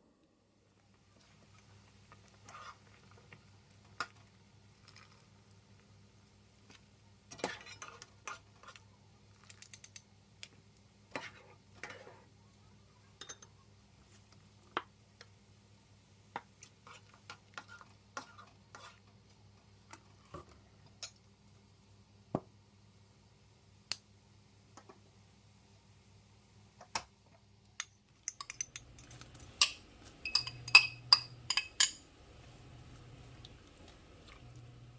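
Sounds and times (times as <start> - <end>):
low steady hum: 27.7 - 34.9
dishes clinking and knocking: 28.2 - 32.0.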